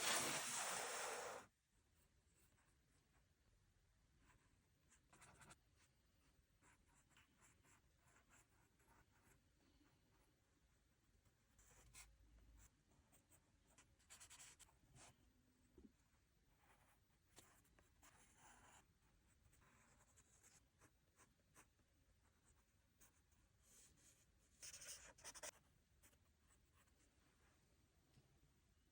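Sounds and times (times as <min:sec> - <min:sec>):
pencil scratching on paper: 0:06.6 - 0:09.4, 0:11.6 - 0:15.1, 0:16.6 - 0:21.7, 0:22.3 - 0:26.2.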